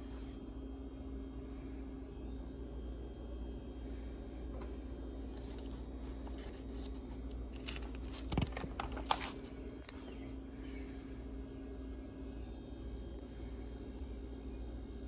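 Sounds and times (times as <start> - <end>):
steady low hum: 0.0 - 15.0
paper pages turning: 5.4 - 10.3.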